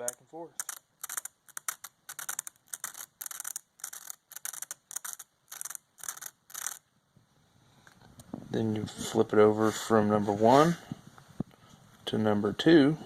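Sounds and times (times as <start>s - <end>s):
metal scratching on emery board: 0.0s - 6.8s.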